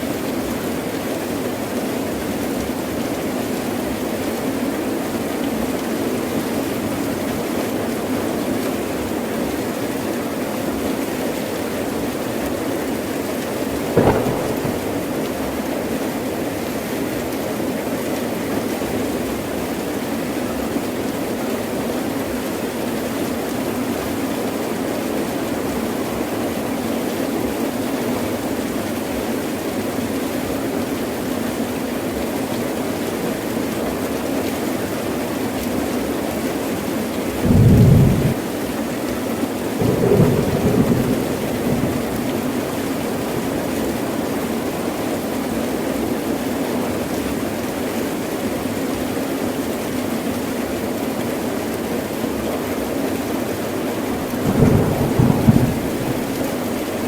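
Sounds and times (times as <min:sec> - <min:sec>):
heavy rain falling: 0:00.0 - 0:57.0
thunder clap: 0:13.7 - 0:16.3, 0:37.4 - 0:38.6, 0:39.8 - 0:43.8, 0:54.4 - 0:57.0
rolling thunder rumble: 0:13.7 - 0:16.4, 0:37.4 - 0:38.7, 0:39.7 - 0:44.1, 0:54.4 - 0:57.0.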